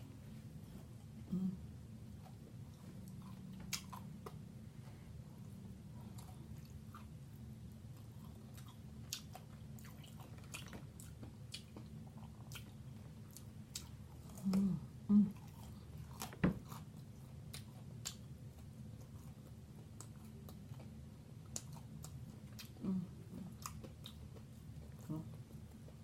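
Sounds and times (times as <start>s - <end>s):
low throat vocal sounds: 1.2s - 1.7s, 14.3s - 15.5s, 22.8s - 23.6s
wet chewing and mouth smacks: 2.7s - 4.5s, 7.9s - 14.7s, 15.4s - 22.8s, 23.5s - 26.0s.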